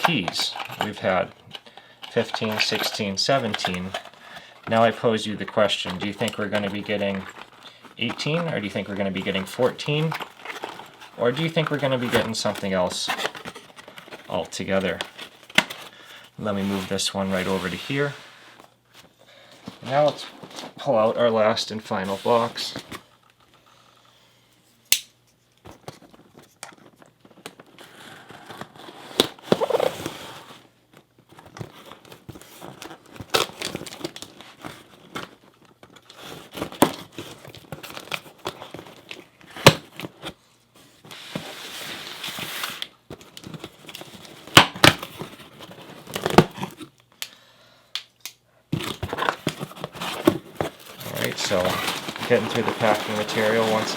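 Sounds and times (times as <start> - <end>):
packing material crinkling: 2.1 - 18.1, 31.3 - 40.3, 48.8 - 53.9
cardboard tearing: 48.8 - 53.9.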